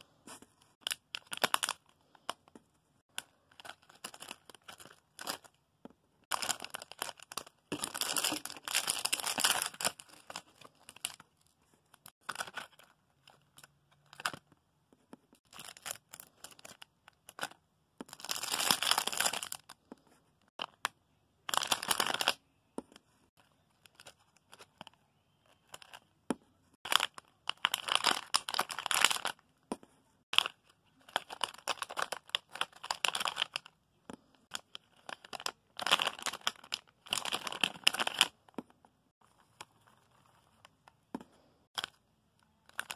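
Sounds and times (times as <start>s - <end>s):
plastic packaging crinkling: 6.3s - 11.2s, 18.1s - 19.7s, 21.5s - 22.4s, 26.8s - 29.4s, 30.3s - 33.7s, 34.5s - 38.3s.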